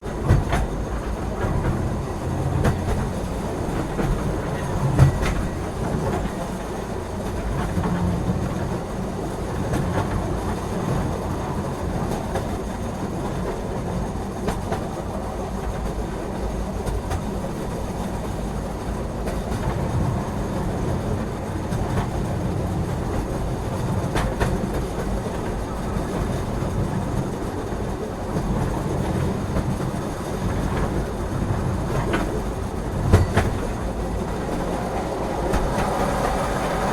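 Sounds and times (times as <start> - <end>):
train rumble: 0.0 - 36.9
wheels clattering over rails: 19.1 - 36.9.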